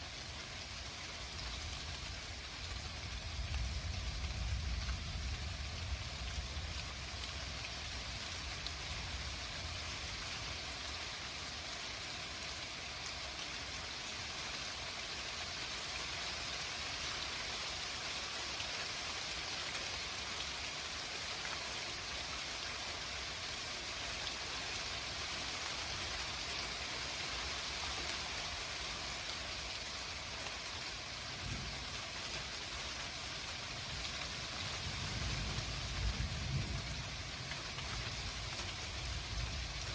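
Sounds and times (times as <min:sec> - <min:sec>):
heavy rain: 0:00.0 - 0:39.9
thunder rumbles: 0:02.8 - 0:07.4, 0:31.3 - 0:32.2, 0:33.8 - 0:39.9.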